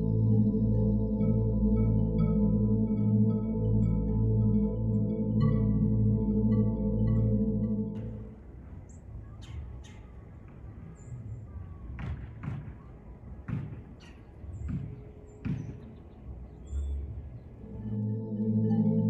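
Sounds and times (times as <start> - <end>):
low background rumble: 0.0 - 9.4
sharp knocks or thuds: 13.5 - 14.0, 14.6 - 15.9.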